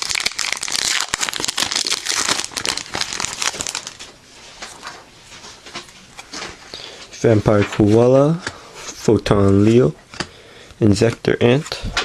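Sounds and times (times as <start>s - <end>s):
foil wrapper crinkling: 0.0s - 5.0s.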